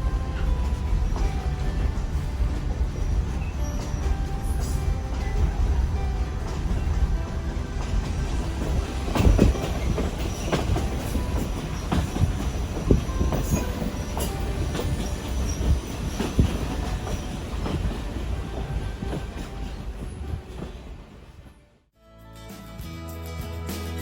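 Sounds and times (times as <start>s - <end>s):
wheels clacking and knocking: 0.0s - 21.0s
train rumbling on track: 0.0s - 21.9s
faint high wheel squeals: 0.2s - 5.2s.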